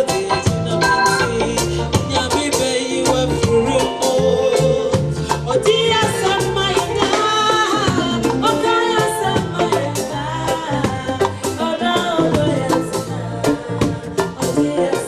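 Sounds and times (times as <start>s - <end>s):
bass line: 0.0s - 15.0s
live band music: 0.0s - 15.0s
percussion beat: 0.0s - 15.0s
person singing: 0.0s - 15.0s.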